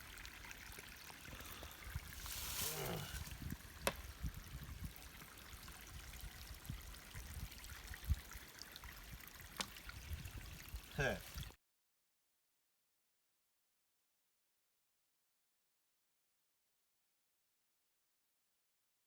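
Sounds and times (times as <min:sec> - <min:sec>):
stream trickling: 0:00.0 - 0:11.6.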